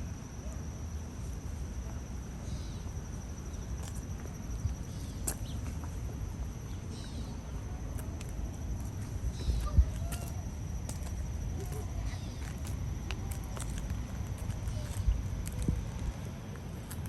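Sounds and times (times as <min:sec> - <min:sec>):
low rumble on microphone: 0:03.6 - 0:17.0.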